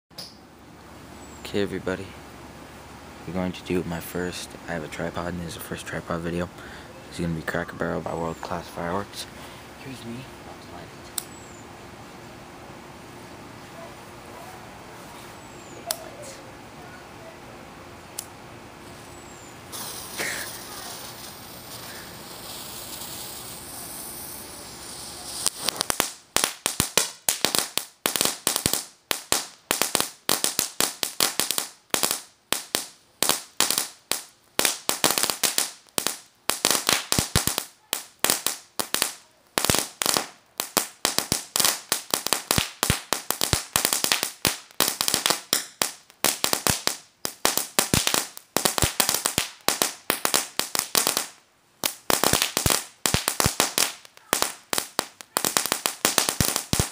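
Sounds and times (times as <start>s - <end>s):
fuse hissing: 19.7s - 25.8s
firecracker bangs: 19.7s - 56.9s.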